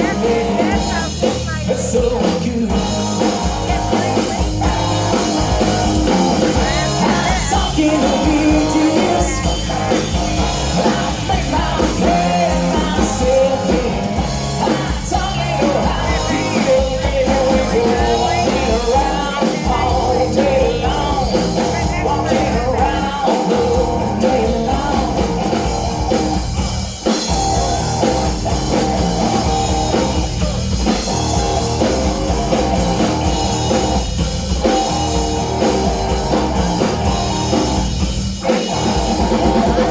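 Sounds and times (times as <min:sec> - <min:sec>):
person singing: 0:00.0 - 0:25.8
rock band playing: 0:00.0 - 0:39.9.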